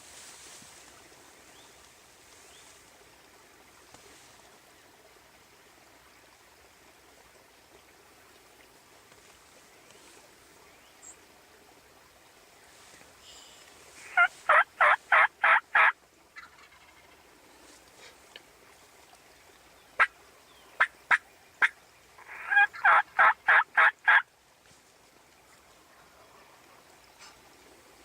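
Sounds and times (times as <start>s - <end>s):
turkey yelps: 14.0s - 17.0s, 21.1s - 24.2s.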